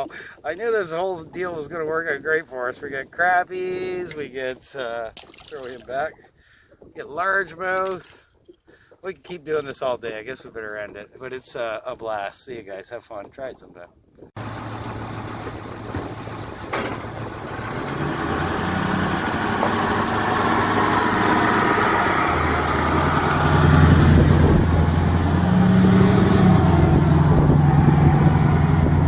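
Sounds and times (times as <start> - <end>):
engine humming with rushing noise: 14.4 - 29.0.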